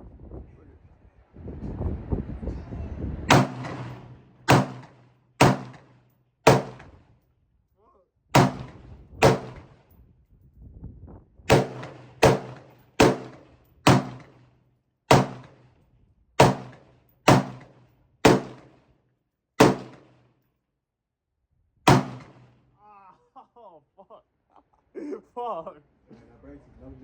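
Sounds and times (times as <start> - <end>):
pistol gunshots: 3.3 - 6.9, 8.4 - 9.7, 11.5 - 14.4, 15.1 - 15.7, 16.4 - 18.8, 19.6 - 20.2, 21.9 - 22.5.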